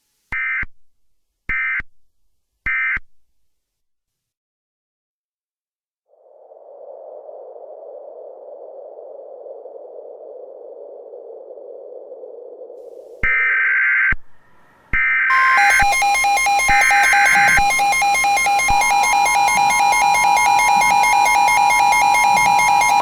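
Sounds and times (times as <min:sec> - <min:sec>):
rapidly pulsing electronic beep: 0:15.0 - 0:23.0
steady piercing attention tone: 0:15.3 - 0:23.0
warbling digital data bursts: 0:15.3 - 0:23.0.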